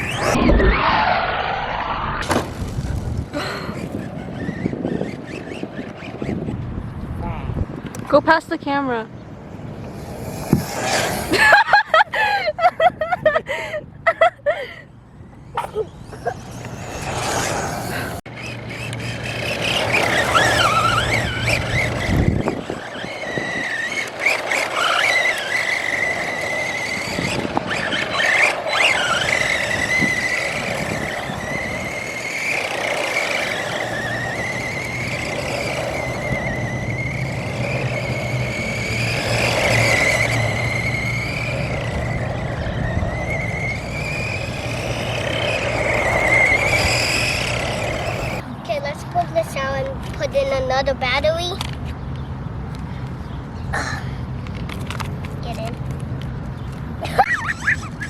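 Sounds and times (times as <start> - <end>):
toy truck electric motor whining: 0.0 - 1.5, 2.5 - 6.7, 9.7 - 12.4, 15.1 - 48.4, 57.1 - 58.0.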